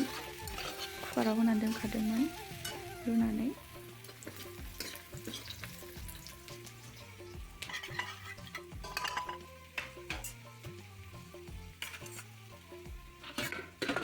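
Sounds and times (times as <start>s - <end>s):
spatula scraping metal pan: 0.0s - 2.8s, 4.1s - 5.7s, 7.6s - 10.4s, 11.8s - 12.4s, 13.2s - 14.0s
curry sizzling in a pan: 0.0s - 14.0s
soft background music: 0.0s - 14.0s.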